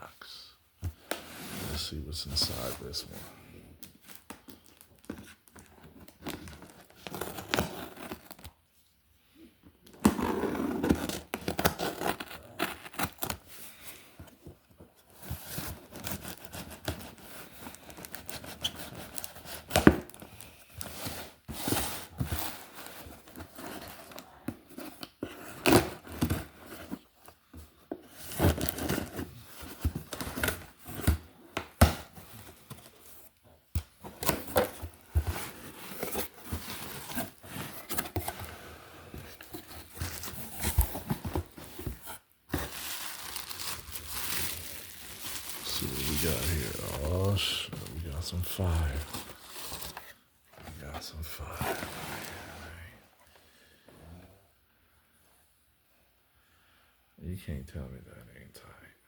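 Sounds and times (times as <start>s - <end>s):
packing material crinkling: 42.5s - 50.2s.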